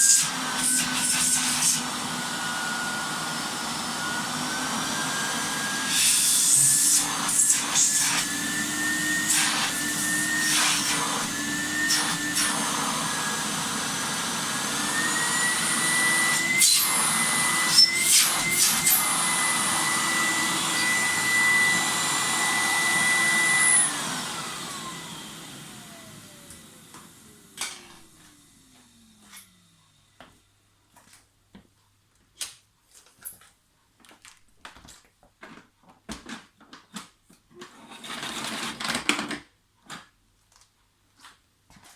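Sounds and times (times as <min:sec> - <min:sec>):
vacuum cleaner whining: 0:00.0 - 0:30.7.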